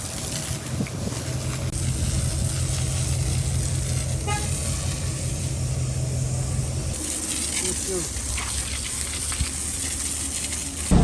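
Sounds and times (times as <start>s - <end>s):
engine humming: 1.3s - 7.0s.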